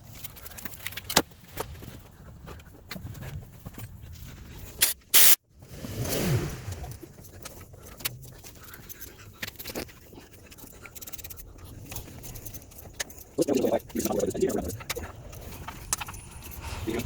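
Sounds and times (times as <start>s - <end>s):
metallic clicks and clatter of tools: 0.0s - 1.9s, 6.8s - 17.0s.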